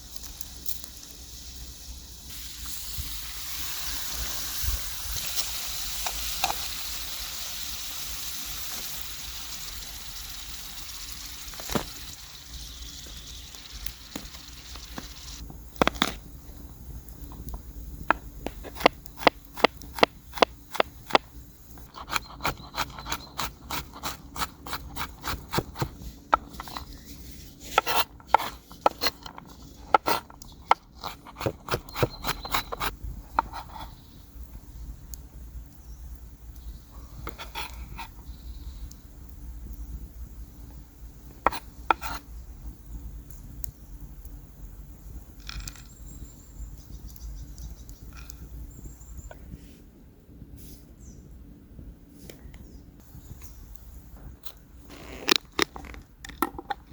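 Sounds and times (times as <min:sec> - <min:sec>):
potatoes sizzling in hot oil: 0:00.0 - 0:15.7.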